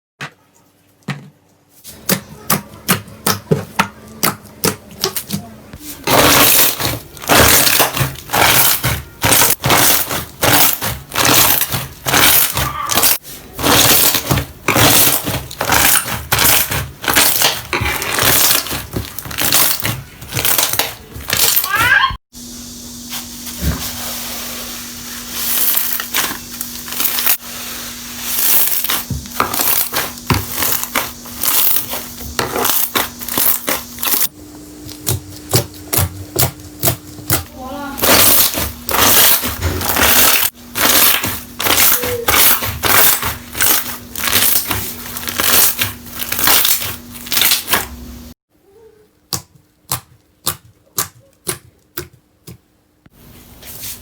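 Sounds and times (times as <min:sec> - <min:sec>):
slime squelching and popping: 0:06.1 - 0:22.0, 0:38.0 - 0:47.8.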